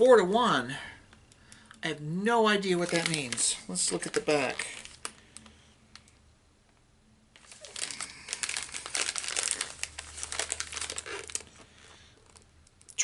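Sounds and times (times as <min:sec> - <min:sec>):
plastic wrapper crinkling: 0:02.6 - 0:06.2, 0:07.4 - 0:13.0.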